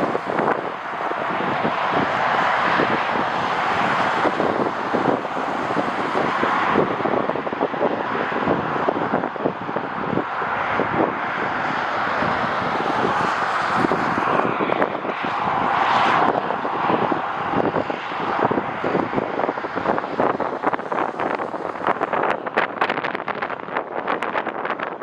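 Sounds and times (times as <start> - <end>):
jet engines roaring past: 0.0 - 25.0
wind buffeting microphone: 0.0 - 25.0.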